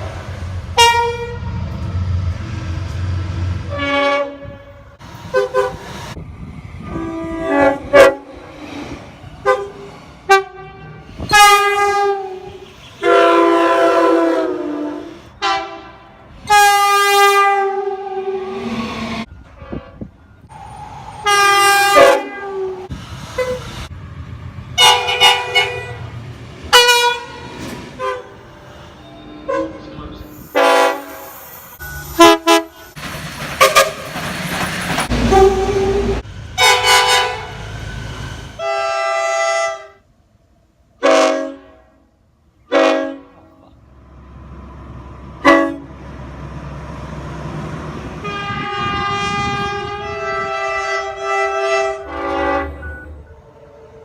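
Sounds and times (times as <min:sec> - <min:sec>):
rumble of passing trains: 0:00.0 - 0:54.0
train horn blasts: 0:00.8 - 0:01.6, 0:03.6 - 0:05.8, 0:06.8 - 0:08.5, 0:09.4 - 0:20.1, 0:21.2 - 0:23.6, 0:24.8 - 0:26.0, 0:26.7 - 0:28.7, 0:30.5 - 0:31.2, 0:32.2 - 0:32.8, 0:35.1 - 0:37.6, 0:38.6 - 0:40.0, 0:41.0 - 0:43.6, 0:45.4 - 0:45.9, 0:48.2 - 0:54.0.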